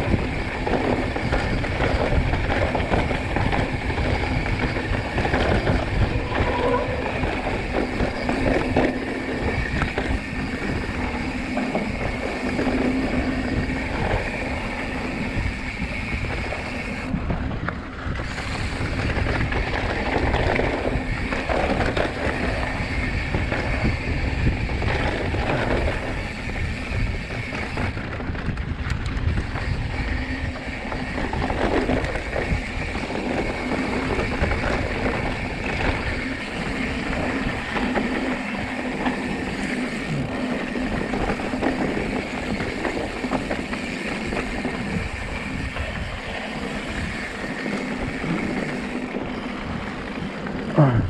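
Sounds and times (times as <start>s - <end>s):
bike tyres rolling: 0.0s - 51.0s
wind buffeting microphone: 0.0s - 51.0s.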